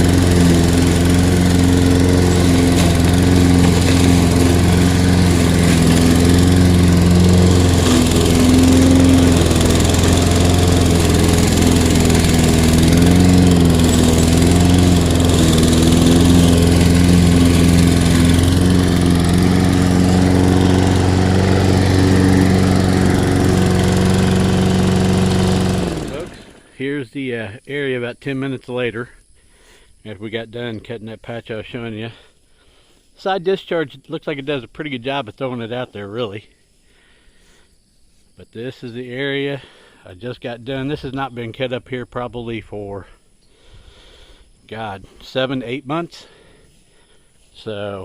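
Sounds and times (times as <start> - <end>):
lawn mower engine mowing grass: 0.0 - 27.0, 43.6 - 48.0.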